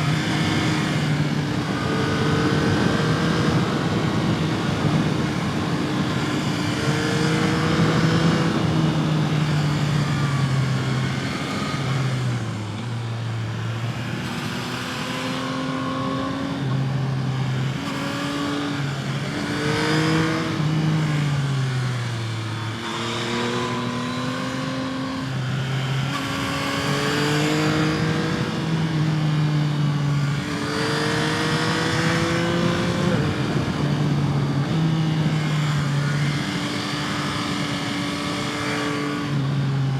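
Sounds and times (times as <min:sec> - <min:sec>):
wind noise: 0:00.0 - 0:12.6, 0:30.2 - 0:38.5
motorcycle engine revving: 0:00.0 - 0:39.9.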